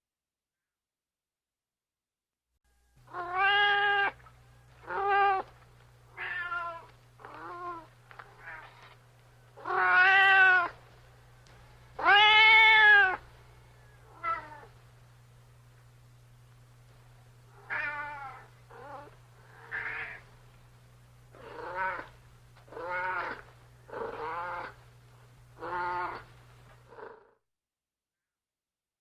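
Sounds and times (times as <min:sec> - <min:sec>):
cat meowing: 0:03.1 - 0:04.2, 0:04.8 - 0:05.5, 0:06.1 - 0:08.8, 0:09.6 - 0:10.8, 0:12.0 - 0:13.2, 0:14.1 - 0:14.7, 0:17.6 - 0:20.2, 0:21.4 - 0:22.1, 0:22.7 - 0:23.4, 0:24.0 - 0:24.8, 0:25.6 - 0:26.3.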